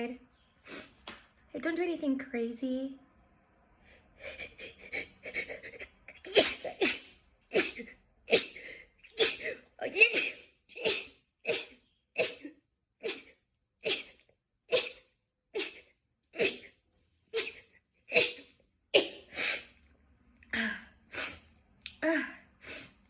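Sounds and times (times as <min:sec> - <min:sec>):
person sneezing rapidly: 0:04.3 - 0:19.8, 0:21.1 - 0:21.4.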